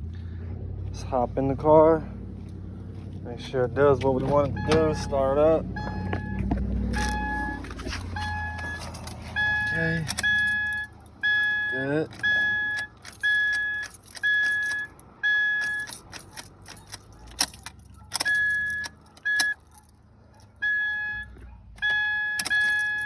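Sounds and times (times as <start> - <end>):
car warning chime beeping: 4.3 - 16.1, 17.2 - 19.8, 20.4 - 23.0
keys rattling and clicking: 6.0 - 23.0.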